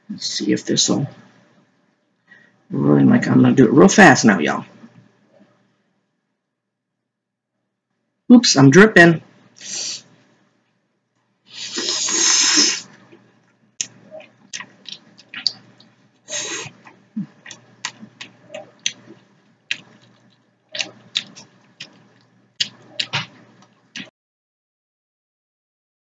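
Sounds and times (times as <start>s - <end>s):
person slurping pasta: 11.5s - 13.0s, 16.3s - 19.2s
wet chewing: 11.5s - 24.1s
lip-smacking clicks: 13.8s - 15.9s, 16.8s - 24.1s.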